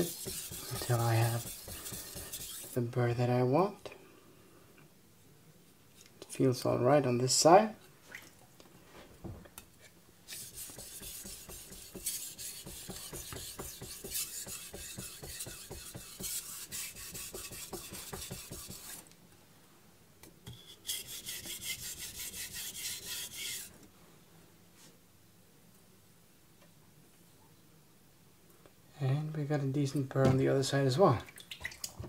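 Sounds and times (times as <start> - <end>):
knife scraping on whetstone: 0.0 - 2.8, 10.3 - 19.1, 20.5 - 23.7.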